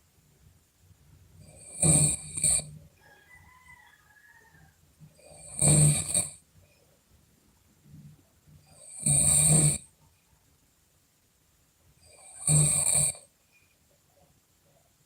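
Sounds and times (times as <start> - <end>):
quiet breathing: 0.0 - 10.5, 11.9 - 15.0
person snoring loudly: 1.6 - 2.7, 5.3 - 6.4, 8.8 - 9.9, 12.1 - 13.2.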